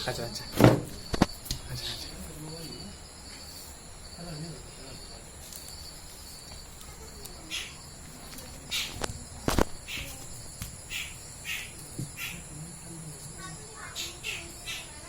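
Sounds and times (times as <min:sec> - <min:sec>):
rustling: 0:00.0 - 0:12.4
crickets and insects chirping: 0:00.0 - 0:15.0
loud sharp knock: 0:00.6 - 0:01.3.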